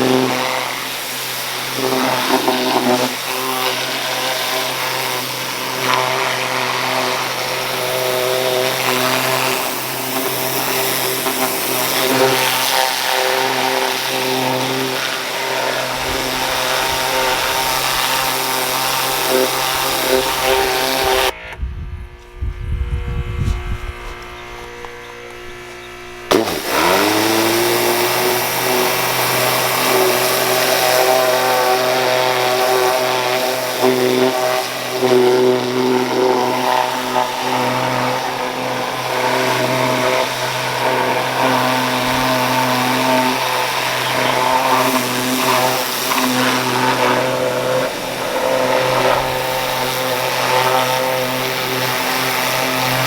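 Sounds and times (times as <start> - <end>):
water spray hissing: 0.0 - 21.4, 26.2 - 53.0
pressure washer running: 0.0 - 53.0.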